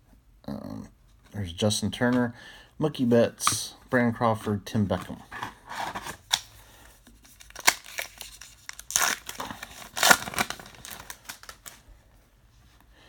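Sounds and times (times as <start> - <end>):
card pack wrapper tearing: 7.2 - 11.8.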